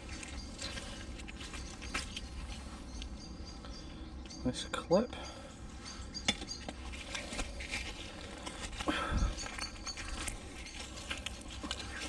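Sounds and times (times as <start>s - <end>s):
metal bits clicking and scraping: 6.2s - 12.0s.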